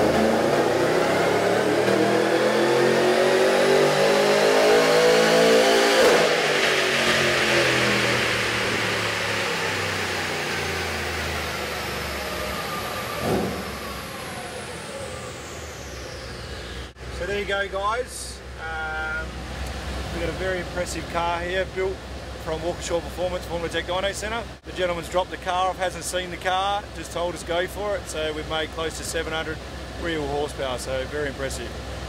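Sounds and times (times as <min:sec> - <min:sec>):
supercharged engine revving on dyno: 0:00.0 - 0:17.4
dyno rollers coasting: 0:06.1 - 0:32.0.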